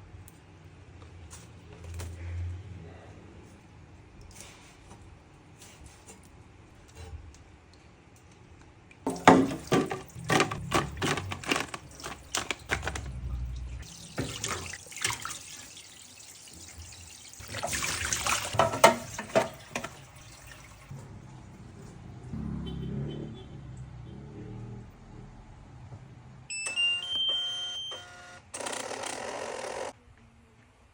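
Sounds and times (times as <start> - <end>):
containers knocking and clinking: 9.1 - 15.4, 16.6 - 20.7
liquid pouring: 9.1 - 21.9.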